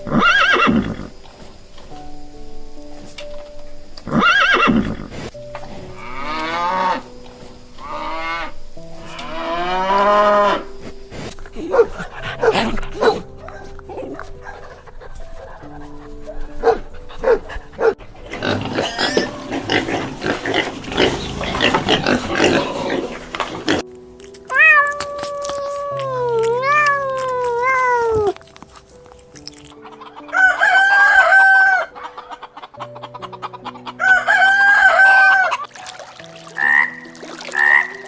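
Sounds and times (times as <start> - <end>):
farm animals calling: 0.0 - 1.2, 4.0 - 23.8, 29.7 - 35.7, 36.6 - 38.0
background music: 0.0 - 38.0.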